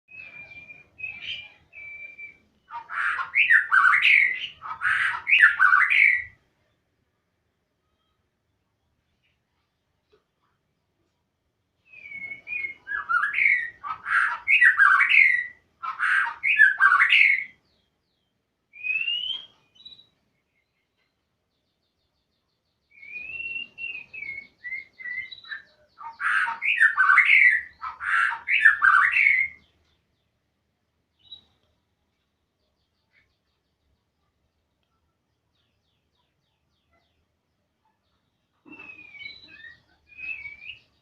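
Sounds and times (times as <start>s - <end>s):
songbird singing whistled phrases: 0.1s - 6.4s, 11.8s - 20.7s, 22.8s - 30.3s, 31.1s - 31.7s, 38.6s - 41.0s.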